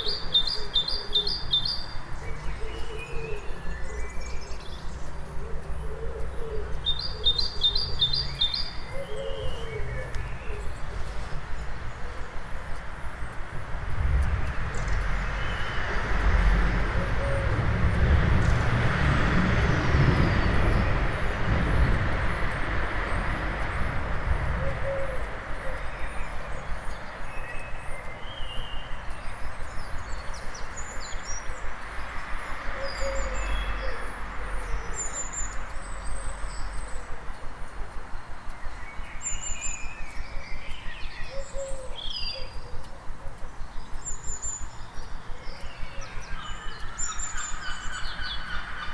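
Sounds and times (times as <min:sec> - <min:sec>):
birds calling and singing: 0:00.0 - 0:48.9
traffic hum: 0:00.0 - 0:48.9
vehicle rumbling past: 0:09.6 - 0:37.2.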